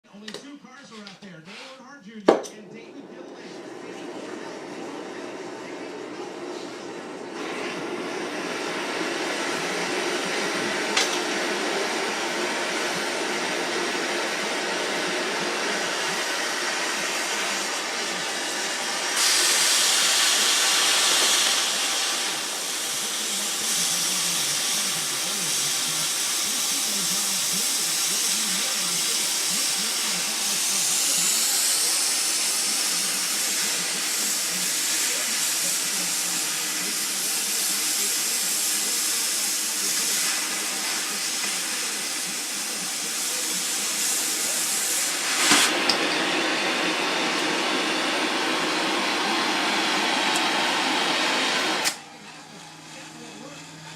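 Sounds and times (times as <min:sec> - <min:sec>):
cutting torch hissing: 0:02.6 - 0:53.9.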